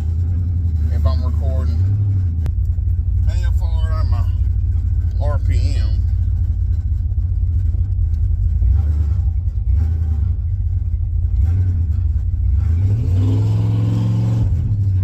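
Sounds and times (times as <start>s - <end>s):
engine rumbling and revving: 0.0s - 15.0s.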